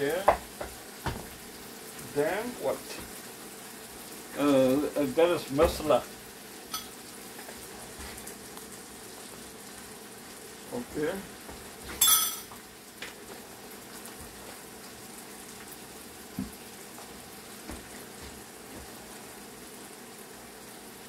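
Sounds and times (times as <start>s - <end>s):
food hissing on stove: 0.0s - 21.0s
metallic utensil clink: 12.0s - 12.5s.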